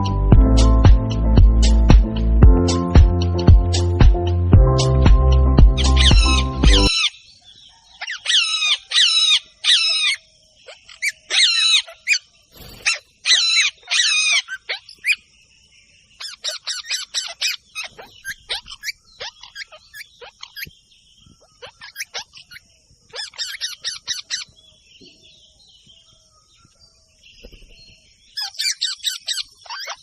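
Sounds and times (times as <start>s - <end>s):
background music: 0.0s - 6.9s
parrot chirping: 5.8s - 7.2s, 8.0s - 15.2s, 16.2s - 20.7s, 21.4s - 24.5s, 28.4s - 30.0s
parrot squawking: 5.8s - 7.2s, 8.0s - 12.2s, 12.8s - 15.2s, 16.2s - 20.7s, 21.5s - 24.5s, 28.4s - 30.0s.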